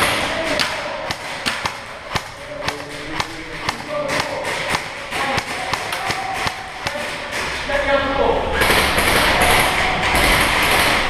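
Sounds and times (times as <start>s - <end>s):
airsoft gun shots: 0.0s - 7.4s
pellets striking hard surfaces: 0.0s - 7.7s
distant voices: 0.0s - 11.0s.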